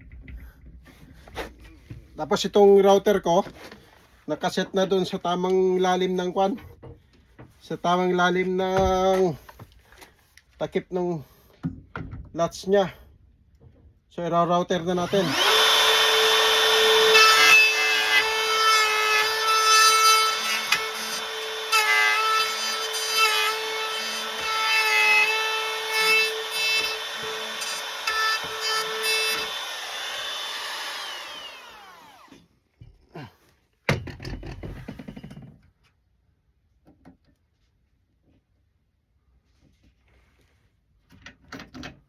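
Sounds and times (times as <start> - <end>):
wood router whining: 14.9 - 32.4.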